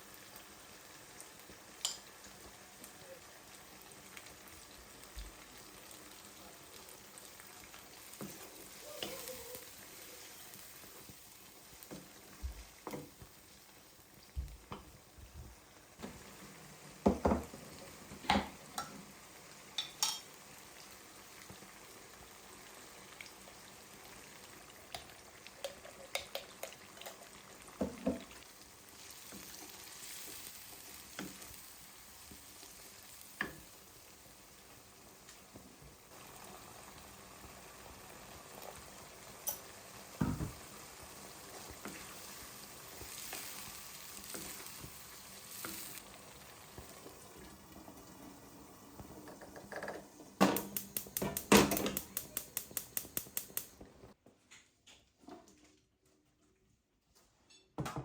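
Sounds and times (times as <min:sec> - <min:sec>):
food sizzling in a pan: 0:00.0 - 0:54.2
utensil knocking on pan: 0:49.7 - 0:53.6.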